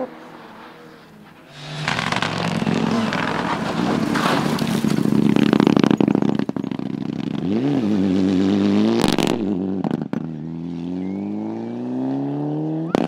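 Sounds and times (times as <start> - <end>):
rally car engine at high revs: 0.0 - 13.0
rapid crackling clatter: 1.3 - 7.4.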